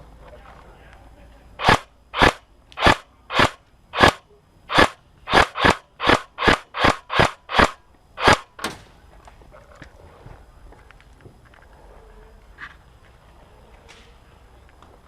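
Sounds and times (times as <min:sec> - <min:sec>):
airsoft gun shots: 0:01.6 - 0:08.8.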